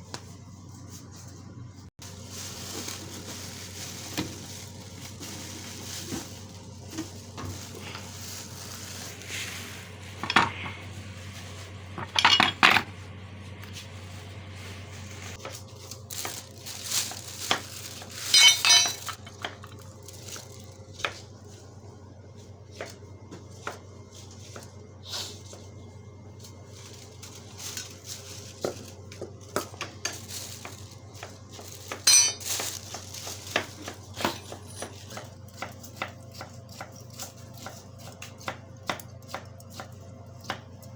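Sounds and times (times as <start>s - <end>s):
steady low hum: 0.0s - 40.9s
metal tools clinking: 12.0s - 12.8s, 18.3s - 19.3s, 31.9s - 32.8s.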